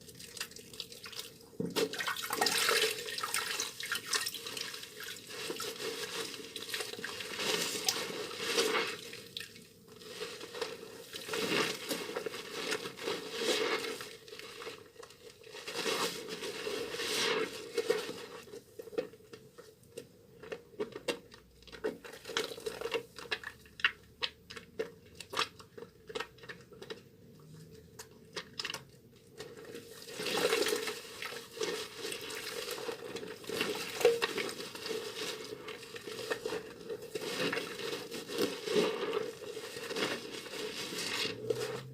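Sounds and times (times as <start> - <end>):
soap squishing in wet hands: 0.0 - 41.9
small sticky clicks and crackles: 17.7 - 41.9.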